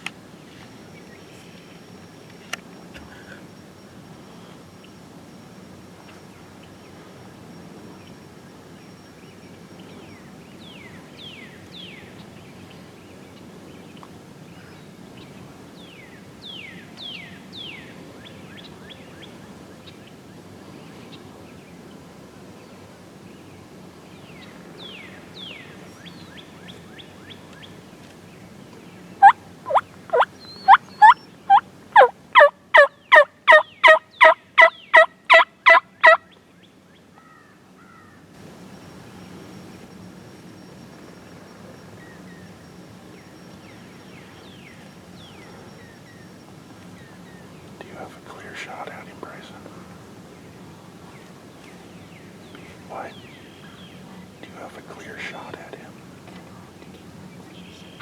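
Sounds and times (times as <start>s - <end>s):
faint bird chirps: 29.2s - 36.2s
wild turkey yelping: 29.2s - 36.2s.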